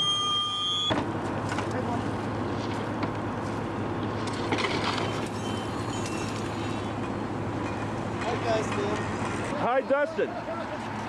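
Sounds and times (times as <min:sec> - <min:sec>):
heavy machinery engine hum: 0:00.0 - 0:11.0.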